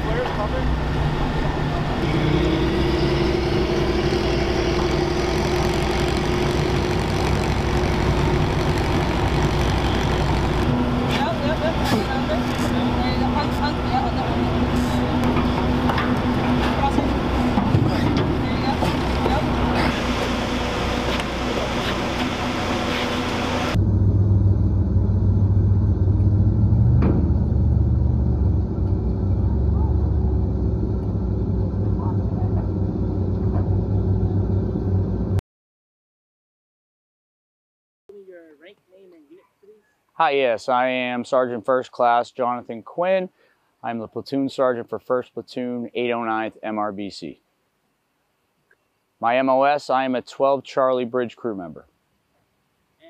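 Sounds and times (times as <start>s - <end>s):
heavy engine idling: 0.0s - 35.4s.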